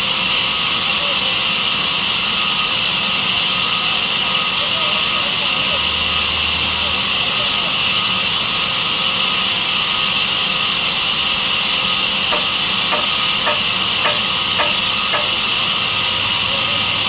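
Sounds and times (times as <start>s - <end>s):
sawmill saw hissing: 11.0s - 15.9s.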